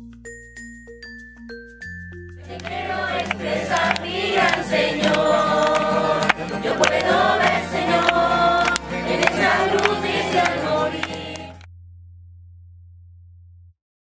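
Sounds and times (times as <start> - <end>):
instrumental backing: 0.1 - 11.7
group singing worship song: 2.4 - 11.7.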